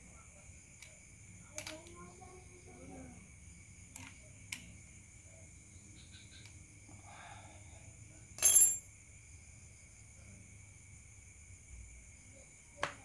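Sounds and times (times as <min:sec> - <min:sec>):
metallic clink with ring: 0:08.4 - 0:08.9.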